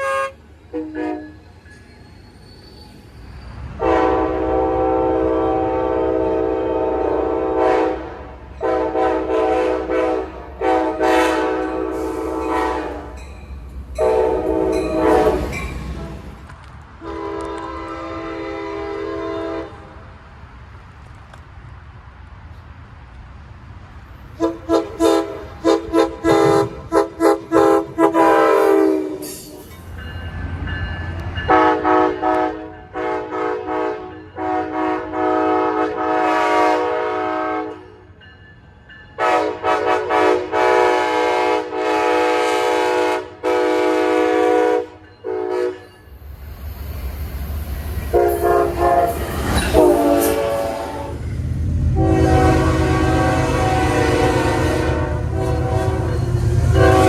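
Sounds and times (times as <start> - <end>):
train horn blasts: 0.0 - 1.5, 3.8 - 13.3, 13.9 - 16.4, 17.0 - 20.0, 24.4 - 29.6, 31.5 - 38.1, 39.2 - 46.1, 48.0 - 57.0
train rumble: 0.0 - 57.0.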